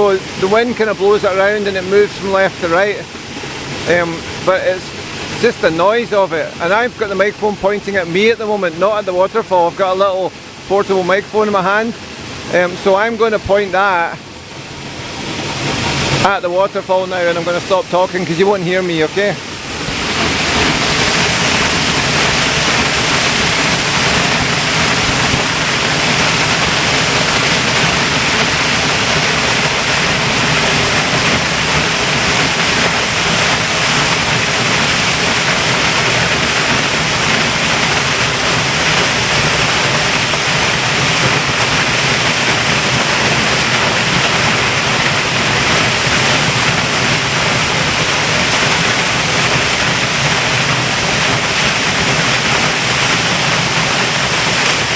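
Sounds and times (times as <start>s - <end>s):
waterfall roaring: 0.0s - 54.9s.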